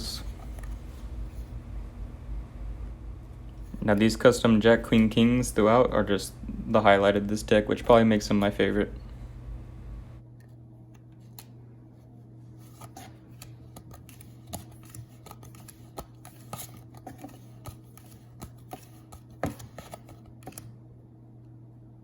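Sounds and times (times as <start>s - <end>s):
low hum: 0.0s - 13.7s
playing cards clicking and snapping: 12.7s - 20.7s.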